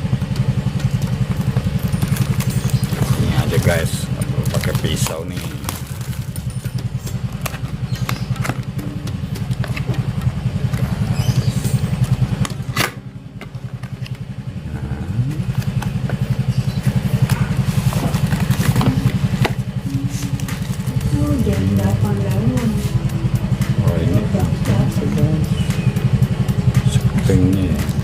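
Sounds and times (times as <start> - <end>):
small motorcycle engine idling: 0.0 - 28.0
package being opened by hand: 1.8 - 3.0, 4.4 - 6.7, 17.2 - 19.6.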